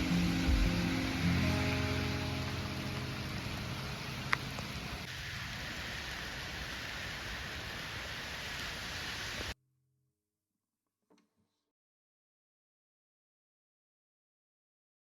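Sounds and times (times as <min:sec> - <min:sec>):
steady rain hiss: 0:00.0 - 0:09.6
sharp tick: 0:04.2 - 0:04.7.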